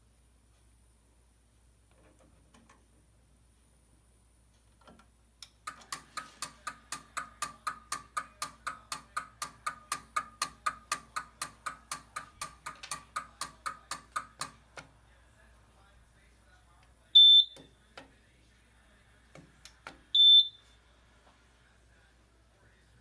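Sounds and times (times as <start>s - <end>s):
fire alarm pulsing: 20.2s - 20.6s.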